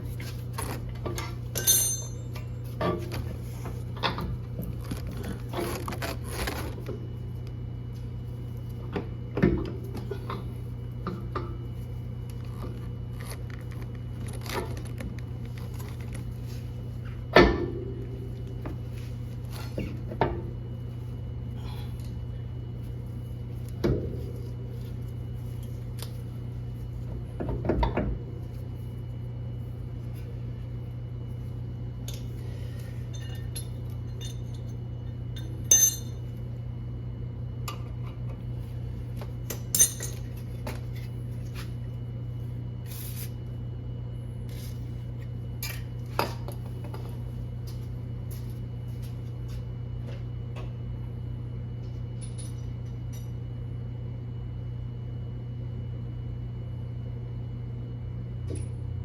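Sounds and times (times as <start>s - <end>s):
steady low hum: 0.0s - 59.0s
tools and metal parts clinking: 0.6s - 3.1s, 33.0s - 34.8s, 35.4s - 36.2s, 39.5s - 40.7s, 52.2s - 53.4s.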